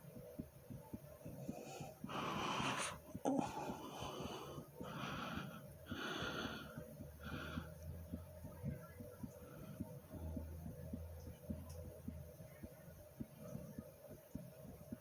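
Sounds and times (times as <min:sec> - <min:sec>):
fast heartbeat thumps: 0:00.0 - 0:15.0
person breathing: 0:01.4 - 0:07.8.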